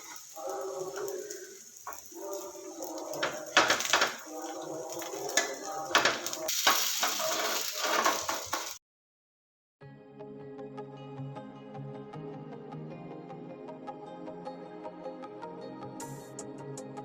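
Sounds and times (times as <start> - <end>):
metal utensils clinking on cookware: 0.0 - 8.8.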